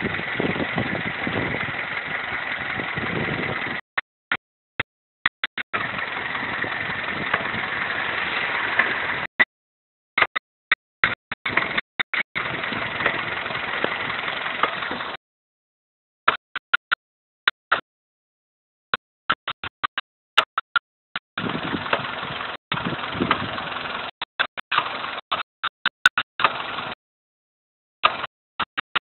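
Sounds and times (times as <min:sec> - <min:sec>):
car engine idling: 0:00.0 - 0:04.0, 0:05.3 - 0:09.5, 0:11.0 - 0:15.2, 0:21.4 - 0:25.8, 0:26.4 - 0:27.0.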